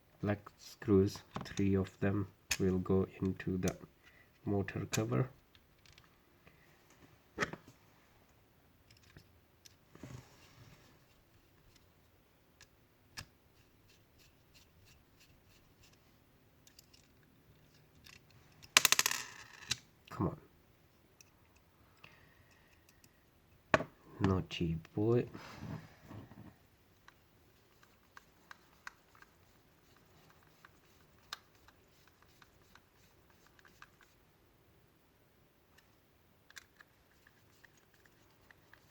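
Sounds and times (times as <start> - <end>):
small parts clicking: 16.6 - 20.2, 21.2 - 23.2, 27.0 - 34.2, 35.7 - 38.9.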